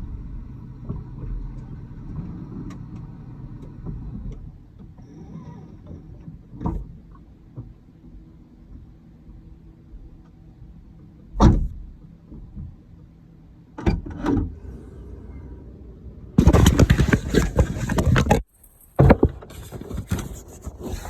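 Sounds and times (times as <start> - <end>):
car clunking: 16.4 - 21.0.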